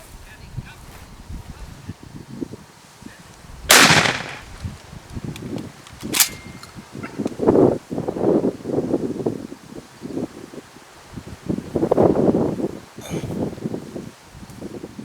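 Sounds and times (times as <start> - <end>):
shotgun shots: 3.7 - 4.8, 5.9 - 6.7.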